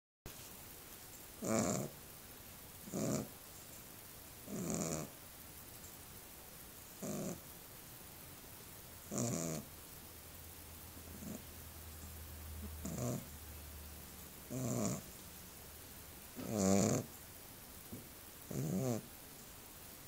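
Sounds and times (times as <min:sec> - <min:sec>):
small dog snoring: 0:01.4 - 0:02.0, 0:02.8 - 0:03.4, 0:04.4 - 0:05.2, 0:07.0 - 0:07.5, 0:09.1 - 0:09.7, 0:11.0 - 0:11.5, 0:12.6 - 0:13.3, 0:14.4 - 0:15.1, 0:16.4 - 0:17.2, 0:18.5 - 0:19.1.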